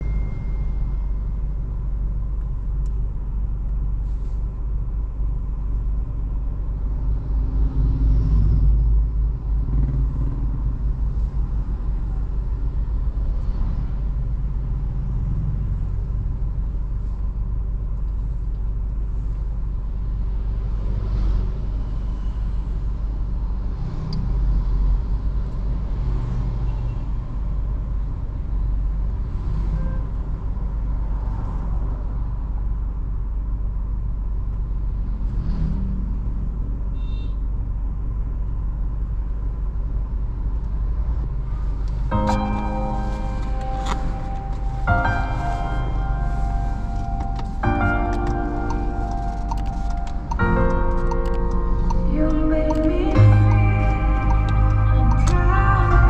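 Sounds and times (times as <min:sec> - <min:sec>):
car engine rumble inside cabin: 0:00.0 - 0:26.0, 0:37.5 - 0:56.0.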